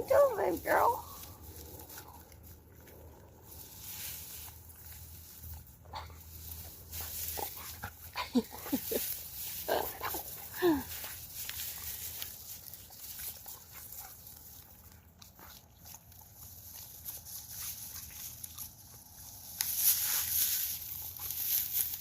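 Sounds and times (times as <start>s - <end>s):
dog mouth and breathing noises: 0.0s - 22.0s.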